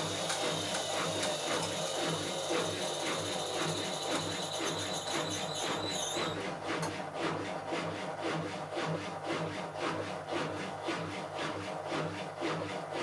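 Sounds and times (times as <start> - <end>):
washing machine drum grinding: 0.0 - 6.9.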